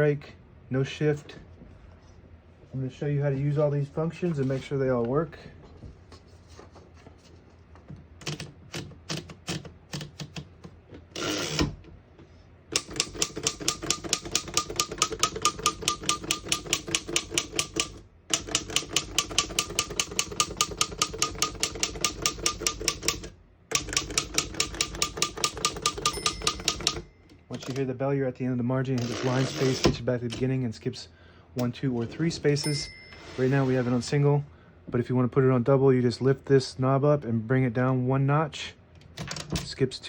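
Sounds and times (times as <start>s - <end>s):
typewriter keystrokes: 8.2s - 10.5s, 12.7s - 27.0s.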